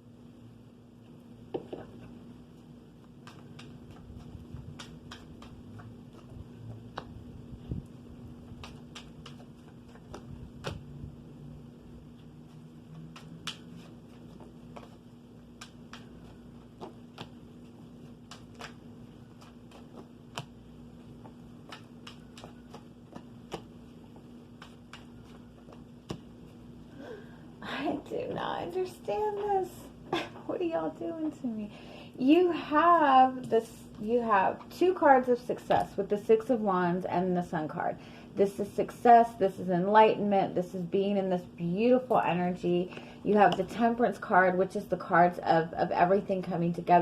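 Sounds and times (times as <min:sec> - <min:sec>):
steady low hum: 0:00.0 - 0:47.0
cards shuffled and laid down: 0:13.0 - 0:15.0, 0:15.6 - 0:26.6.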